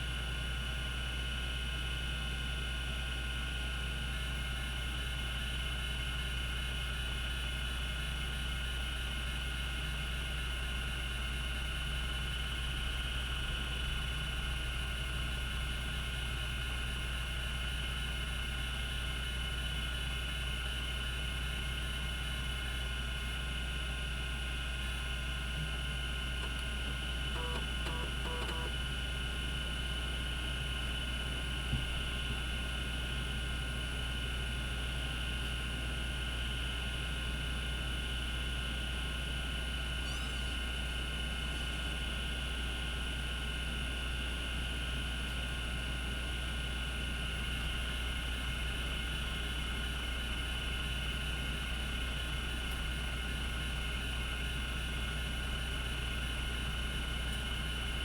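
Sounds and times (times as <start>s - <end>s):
hard drive humming with high tones: 0.0s - 58.0s
faint hard drive ticks: 26.4s - 28.8s.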